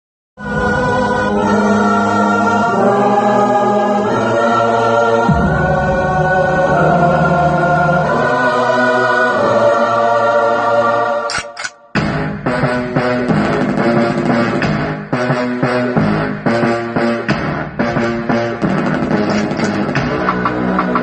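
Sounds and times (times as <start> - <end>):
choir chorale with held chords: 0.4 - 13.2, 19.2 - 21.0.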